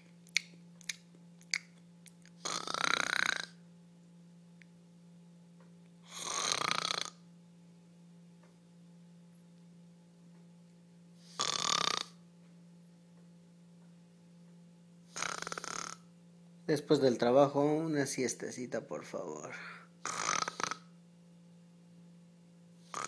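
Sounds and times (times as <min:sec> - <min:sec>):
steady low hum: 0:00.0 - 0:23.0
person snoring loudly: 0:02.4 - 0:03.6, 0:06.1 - 0:07.2, 0:11.3 - 0:12.2, 0:15.1 - 0:16.0, 0:19.6 - 0:20.9.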